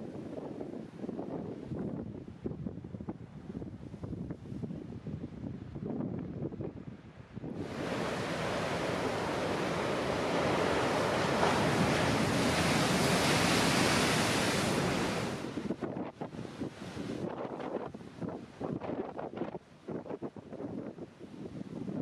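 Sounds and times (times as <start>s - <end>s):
wind gusting on microphone: 0.0s - 22.0s
wave breaking in surf: 7.6s - 17.3s.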